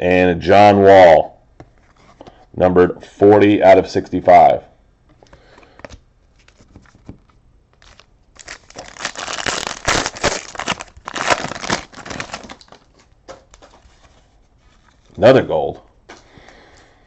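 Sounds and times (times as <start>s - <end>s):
foil wrapper crinkling and tearing: 7.7s - 14.1s.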